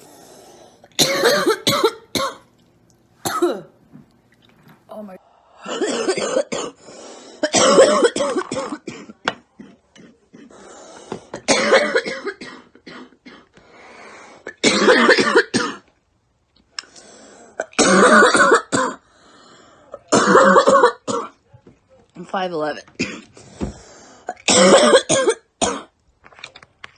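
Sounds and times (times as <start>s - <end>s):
breathing: 0.0s - 0.8s, 5.2s - 5.7s, 6.8s - 7.4s, 10.5s - 11.4s, 13.6s - 14.5s, 16.8s - 17.6s, 19.0s - 20.1s, 23.3s - 24.3s
girl coughing: 1.0s - 2.4s, 3.2s - 3.8s, 5.6s - 6.8s, 7.4s - 10.6s, 11.5s - 13.5s, 14.6s - 15.8s, 17.6s - 19.0s, 20.1s - 21.4s, 24.3s - 25.9s.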